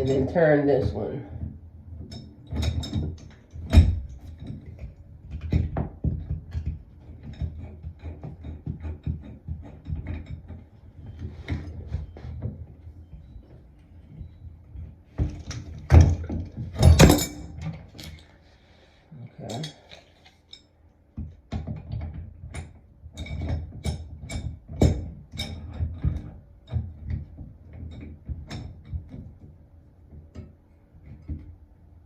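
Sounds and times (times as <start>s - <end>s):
metal knocks: 15.2s - 17.8s.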